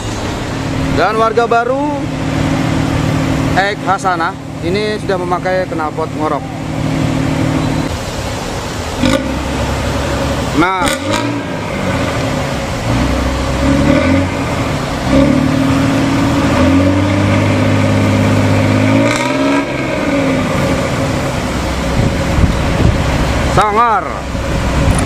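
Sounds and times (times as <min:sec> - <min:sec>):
diesel bus engine revving: 0:00.0 - 0:25.0.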